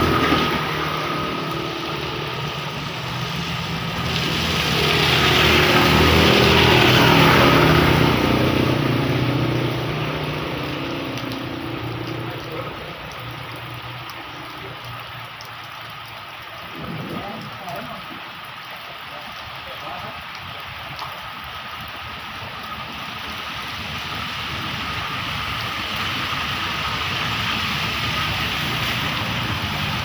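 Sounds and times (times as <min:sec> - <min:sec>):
vehicle engine passing: 0:00.0 - 0:15.4
rain hissing: 0:00.0 - 0:30.0.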